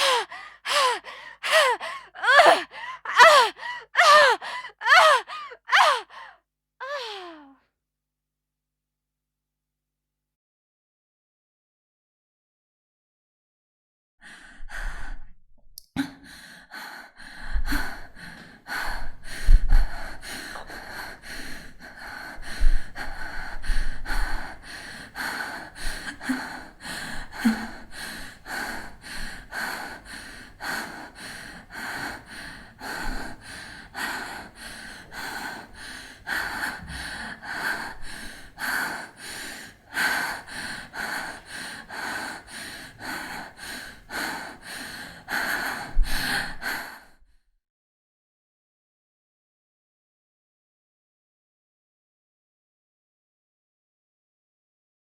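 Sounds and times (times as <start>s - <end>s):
woman panting heavily: 0.0s - 7.5s, 16.0s - 47.2s.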